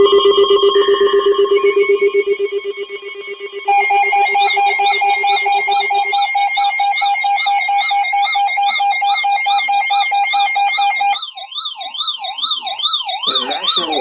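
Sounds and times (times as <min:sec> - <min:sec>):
rapid pulsing electronic beep: 0:00.0 - 0:14.0
rising and falling siren wail: 0:03.9 - 0:14.0
warbling high tone: 0:13.2 - 0:14.0.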